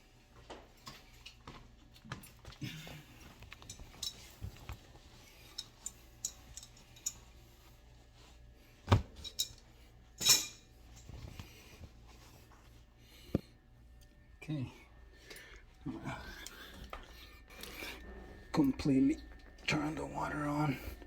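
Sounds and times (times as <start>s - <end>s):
metal tools clinking: 3.5s - 7.6s, 9.2s - 11.2s.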